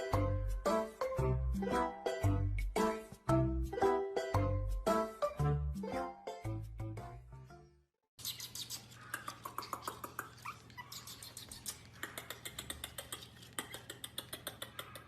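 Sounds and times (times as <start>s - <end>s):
puppy squeaking: 8.2s - 15.0s
sharp clicks and taps: 11.4s - 15.0s.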